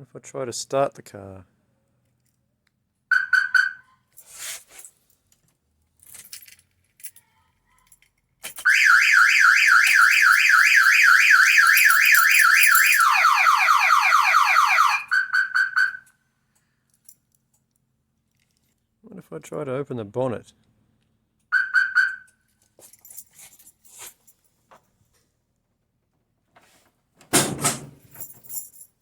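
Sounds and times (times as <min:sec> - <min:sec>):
car alarm chirps: 0:03.1 - 0:03.9, 0:08.7 - 0:16.1, 0:21.5 - 0:22.3
car alarm siren warbling: 0:08.7 - 0:16.0, 0:21.6 - 0:22.2.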